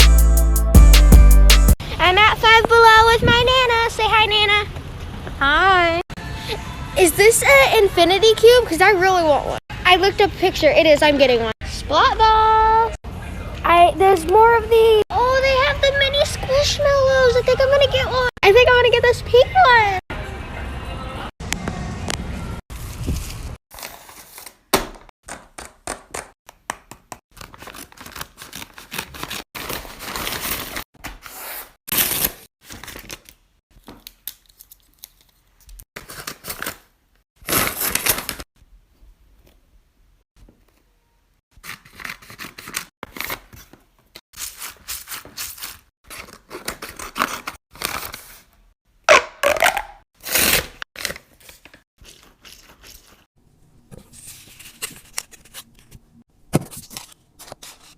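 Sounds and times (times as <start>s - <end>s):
tearing and crinkling: 34.0s - 38.5s, 49.4s - 53.3s.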